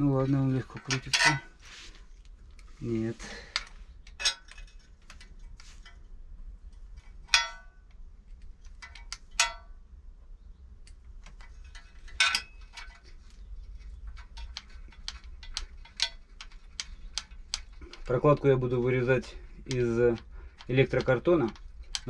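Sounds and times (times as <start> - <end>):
metal bolts and tools clinking: 0.6 - 1.6, 3.5 - 6.0, 7.0 - 7.9, 8.6 - 9.8, 11.2 - 13.2, 14.0 - 18.4.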